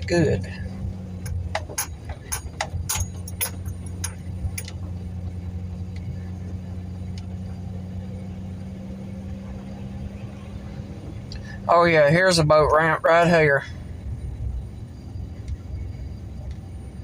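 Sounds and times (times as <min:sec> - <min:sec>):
truck engine and road hum: 0:00.0 - 0:17.0
sharp ticks or rattles: 0:01.2 - 0:05.0.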